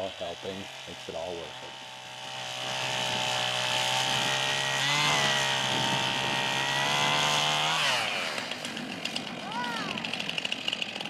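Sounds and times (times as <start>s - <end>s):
chainsaw running at high revs: 0.0s - 11.0s.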